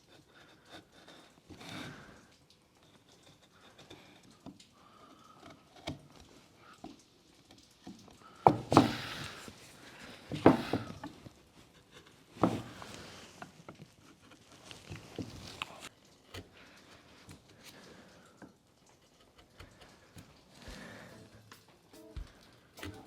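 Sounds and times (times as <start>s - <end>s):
carving tool striking wood: 8.4s - 9.5s, 10.3s - 11.2s, 12.4s - 13.1s, 22.8s - 23.0s.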